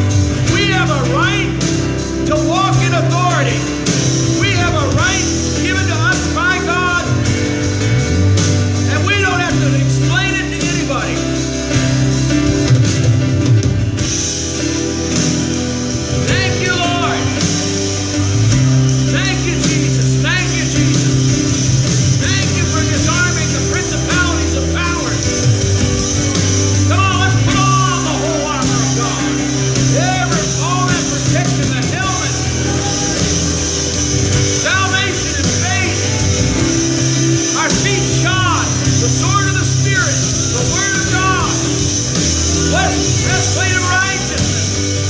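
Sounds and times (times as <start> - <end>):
band playing sustained chords: 0.0 - 45.0
church worship music with guitar: 0.0 - 45.0
person singing: 16.2 - 18.2, 26.7 - 41.8.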